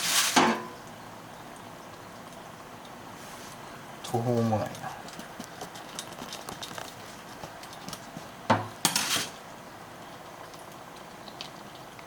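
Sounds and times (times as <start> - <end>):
utensils and dishes clinking: 8.8 - 9.4.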